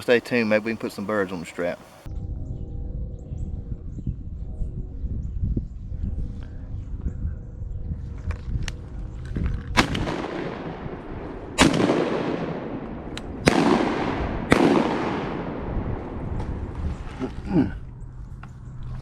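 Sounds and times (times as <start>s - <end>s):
shotgun blasts with echo: 9.7s - 16.6s.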